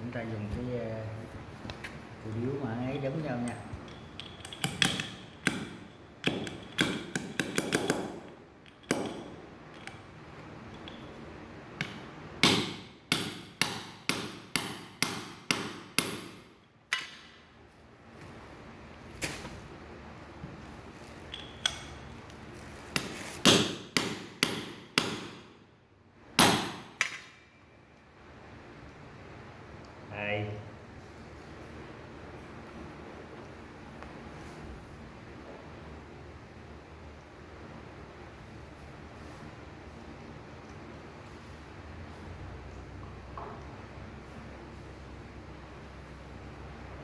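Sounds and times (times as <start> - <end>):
hammer striking metal: 3.5 - 9.4, 11.8 - 16.4, 23.0 - 25.5.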